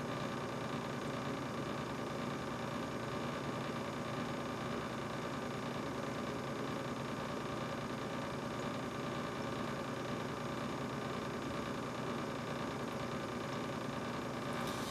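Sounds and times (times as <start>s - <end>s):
refrigerator humming: 12.6s - 14.9s.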